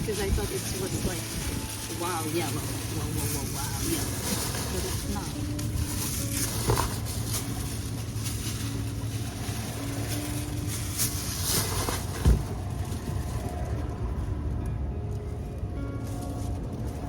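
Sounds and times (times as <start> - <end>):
wind buffeting microphone: 0.0 - 17.0
dull thump: 11.8 - 12.6.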